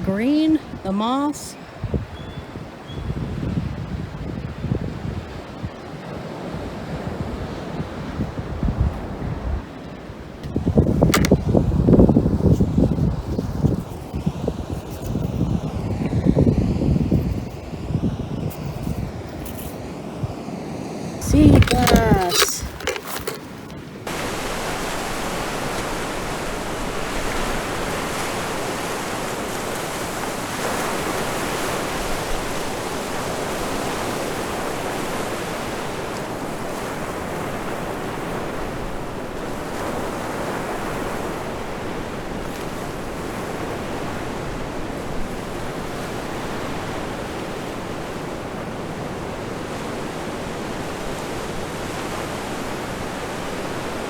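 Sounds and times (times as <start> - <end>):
waves on the shore: 0.0 - 54.0
wind: 0.0 - 54.0.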